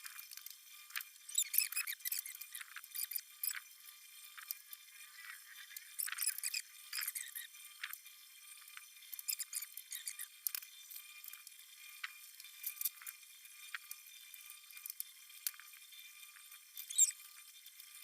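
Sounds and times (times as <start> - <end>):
short squeaks: 1.3 - 3.2, 6.0 - 7.5, 16.8 - 17.3.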